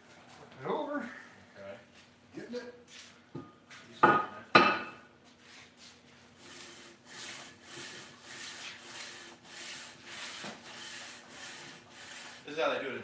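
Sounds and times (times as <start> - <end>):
hand sanding strokes on metal: 5.4 - 13.0.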